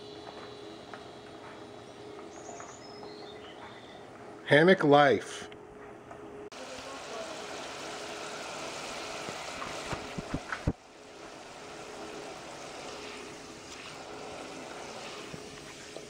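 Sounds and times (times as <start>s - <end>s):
potatoes sizzling in hot oil: 6.5s - 16.0s.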